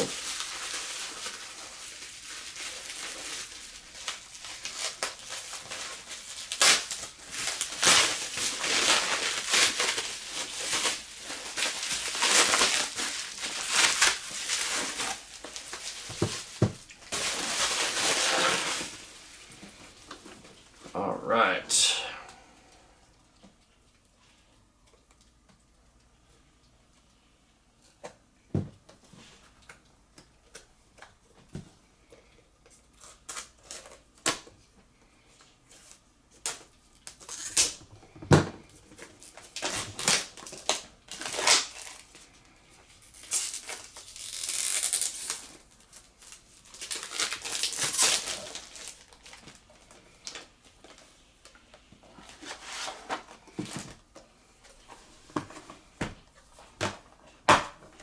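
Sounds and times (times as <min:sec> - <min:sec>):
plastic packaging crinkling: 0:00.0 - 0:20.8, 0:38.9 - 0:42.4, 0:43.0 - 0:54.1.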